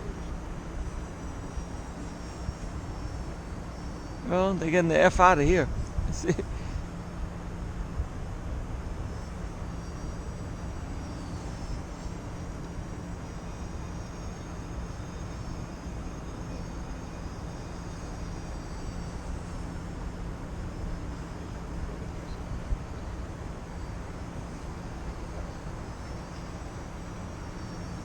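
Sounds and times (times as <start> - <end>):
model airplane motor and propeller: 0.0 - 5.1, 5.7 - 28.0
wind rumbling on microphone: 5.7 - 6.6.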